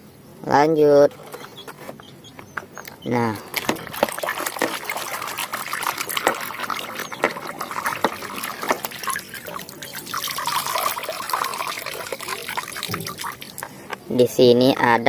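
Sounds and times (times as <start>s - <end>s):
water trickling and splashing: 3.1s - 15.0s.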